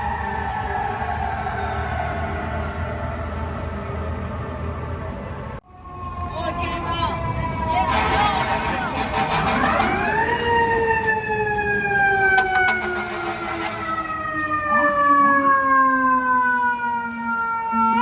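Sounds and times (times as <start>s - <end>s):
mechanical siren wail: 5.6s - 18.0s.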